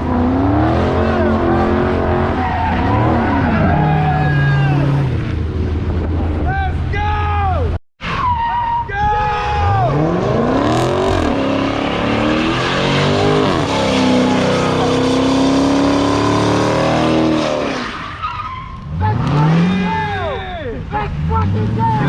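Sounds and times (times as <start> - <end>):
car engine revving hard: 0.0 - 5.3, 9.8 - 18.0, 18.9 - 20.2.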